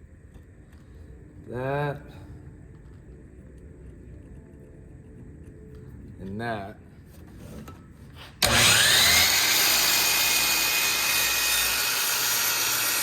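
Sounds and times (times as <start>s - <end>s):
power saw motor whining: 8.4s - 13.0s.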